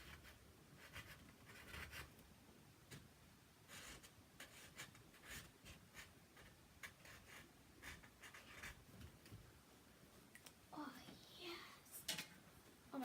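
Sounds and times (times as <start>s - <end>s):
pen scratching on label: 0.0s - 2.1s, 3.7s - 8.8s.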